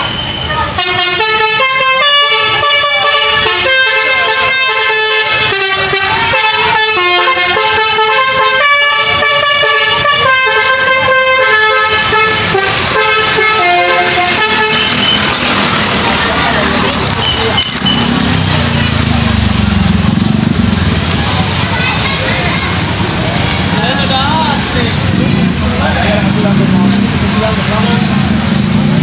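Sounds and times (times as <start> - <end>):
bus horn playing a tune: 0.5 - 16.0.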